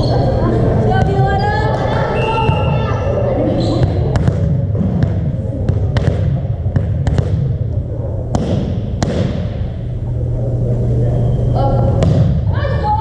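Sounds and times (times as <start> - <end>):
steady low hum: 0.0 - 13.0
volleyball thuds: 3.7 - 7.7, 8.3 - 9.6, 12.0 - 12.4.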